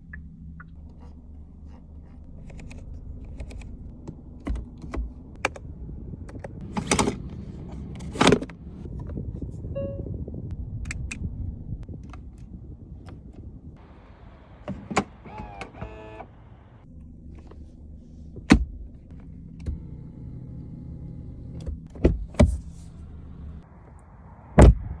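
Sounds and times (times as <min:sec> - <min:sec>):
low car hum: 0:00.0 - 0:25.0
electric car windows whirring: 0:13.8 - 0:16.8.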